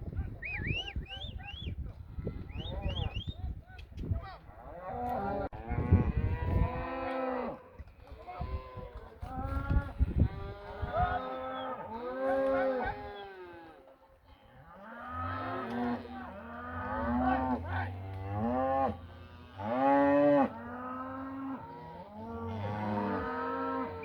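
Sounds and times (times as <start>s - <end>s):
cattle mooing: 9.2s - 24.0s.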